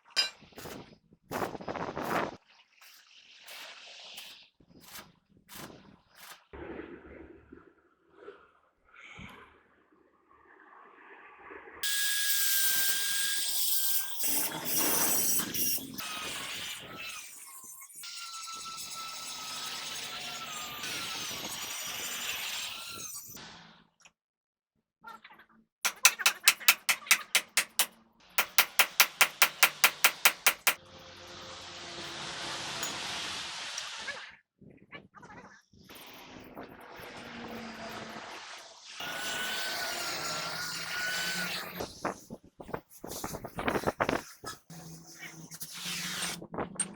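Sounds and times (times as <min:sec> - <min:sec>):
quick sharp taps: 0:25.9 - 0:30.8.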